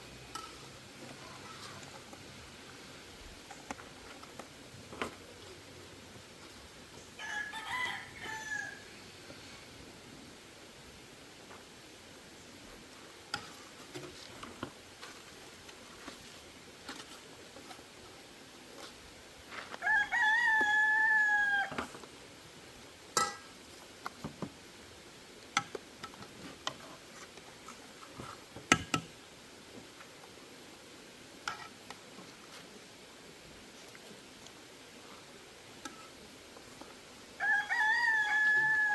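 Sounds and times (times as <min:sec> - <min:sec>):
rooster crowing: 0:07.2 - 0:09.0, 0:19.8 - 0:21.9, 0:37.4 - 0:38.9.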